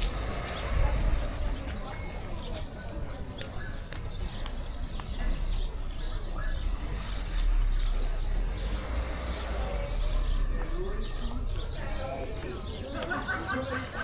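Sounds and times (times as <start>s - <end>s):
birds chirping: 0.0s - 14.0s.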